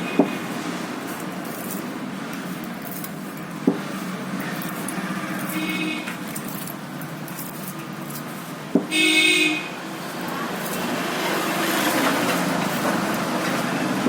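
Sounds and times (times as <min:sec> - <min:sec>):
street traffic: 0:00.0 - 0:14.0
vehicle horn toot: 0:05.2 - 0:06.2, 0:08.9 - 0:09.8.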